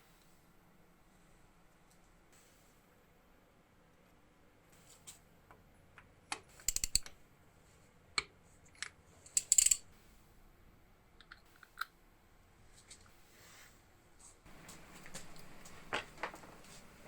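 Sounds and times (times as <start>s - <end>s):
small hard objects clicking: 6.3s - 7.2s, 9.3s - 9.8s.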